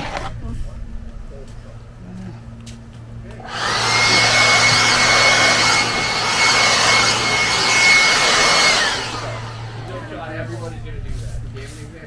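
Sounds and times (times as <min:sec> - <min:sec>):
leaf blower whining: 0:00.0 - 0:00.3, 0:03.4 - 0:10.7.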